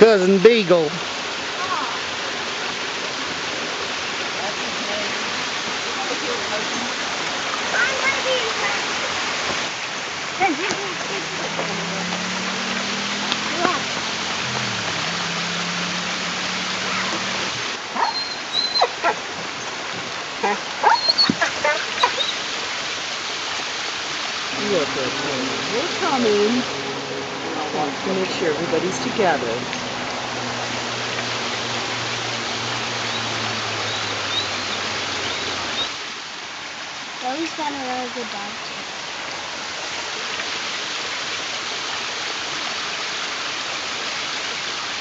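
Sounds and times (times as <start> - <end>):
creek water rushing: 0.0 - 45.0
dog whining: 18.0 - 19.2, 20.8 - 22.4.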